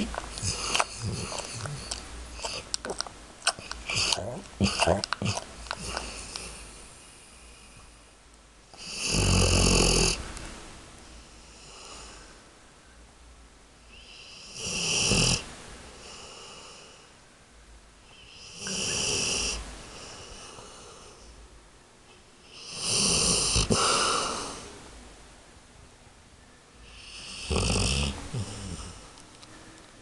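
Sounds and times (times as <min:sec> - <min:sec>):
pet snoring: 0:00.0 - 0:02.7, 0:03.5 - 0:07.2, 0:08.8 - 0:10.2, 0:14.0 - 0:15.5, 0:18.2 - 0:21.2, 0:22.5 - 0:24.6, 0:26.8 - 0:29.1.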